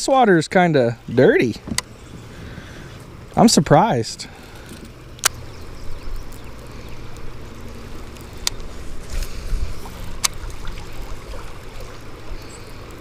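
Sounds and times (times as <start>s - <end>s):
river water moving: 0.0s - 13.0s
sharp clicks: 4.7s - 5.4s.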